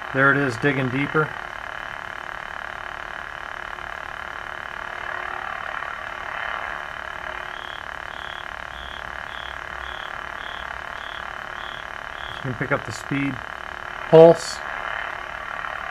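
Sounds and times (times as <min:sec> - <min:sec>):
pulsing high tone: 0:04.4 - 0:15.9.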